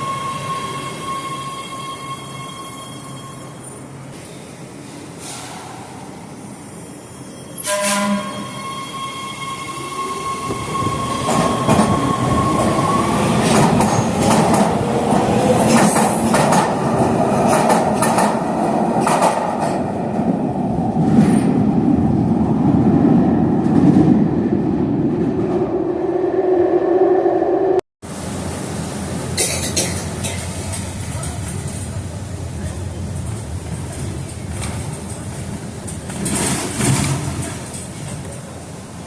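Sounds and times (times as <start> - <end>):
train wheels rumbling on track: 10.0 - 25.8, 28.2 - 39.0
rising tone: 24.4 - 27.8.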